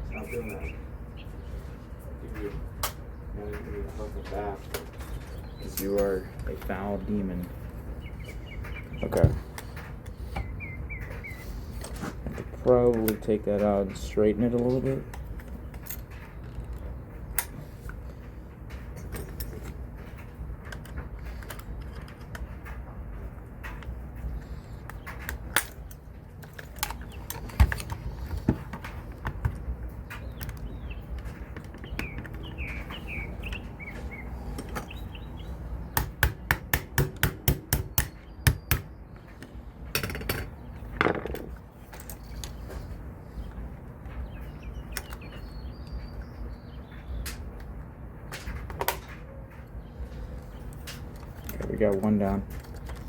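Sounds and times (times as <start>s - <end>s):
rifle parts clicking and knocking: 14.4s - 18.0s, 23.6s - 33.6s, 39.4s - 42.8s, 50.6s - 53.0s.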